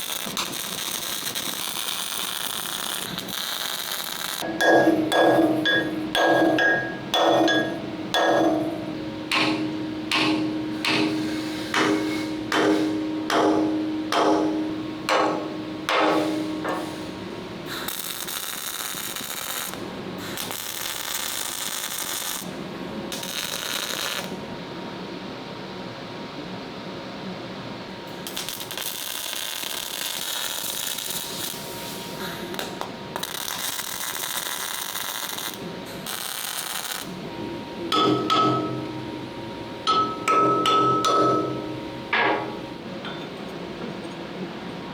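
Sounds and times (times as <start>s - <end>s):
hammer striking steel plate: 4.4s - 16.9s, 37.9s - 39.0s, 39.9s - 43.2s.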